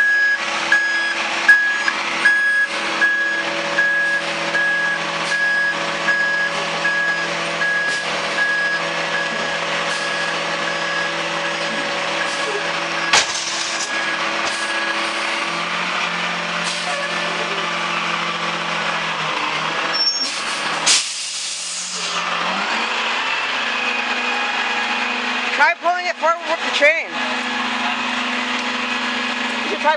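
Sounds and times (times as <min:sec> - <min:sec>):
reverse alarm beeping: 0:00.0 - 0:12.4
garbage truck engine running: 0:00.0 - 0:29.9
air brake release: 0:20.0 - 0:22.2.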